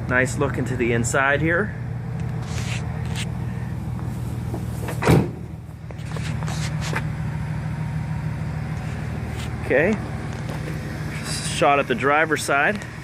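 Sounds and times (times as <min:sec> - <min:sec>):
low hum: 0:01.5 - 0:13.0
car door thud: 0:04.5 - 0:05.6.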